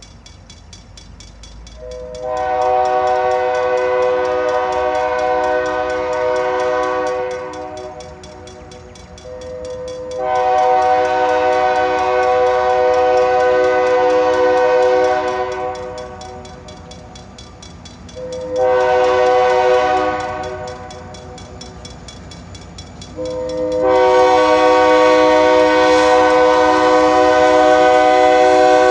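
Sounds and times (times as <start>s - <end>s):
passing train noise: 0.0s - 28.9s
locomotive air horn: 1.8s - 8.6s, 9.2s - 16.7s, 18.2s - 21.2s, 23.2s - 28.9s.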